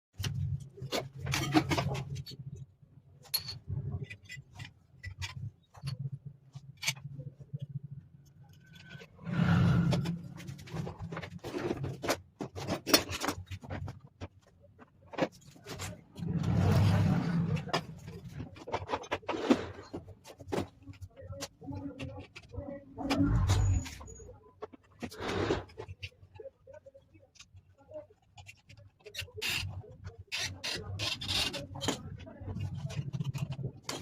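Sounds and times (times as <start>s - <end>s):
hand tools clicking and scraping: 8.5s - 22.6s, 27.3s - 34.0s.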